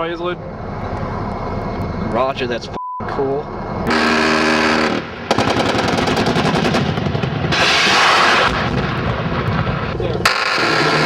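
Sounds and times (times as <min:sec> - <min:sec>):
loud rushing noise: 0:03.6 - 0:11.0
automatic cannon firing bursts: 0:03.9 - 0:11.0.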